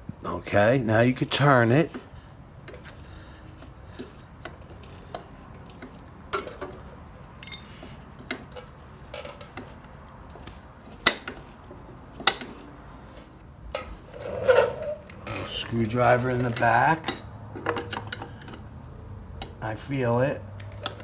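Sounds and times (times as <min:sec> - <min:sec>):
light metallic tool clinks: 0:07.4 - 0:07.8.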